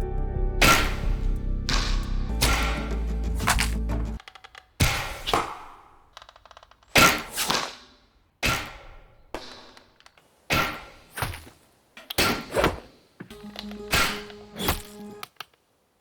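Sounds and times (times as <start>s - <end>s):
arrow hitting target: 0.6s - 3.8s, 4.8s - 6.0s, 7.0s - 9.8s, 10.5s - 11.5s.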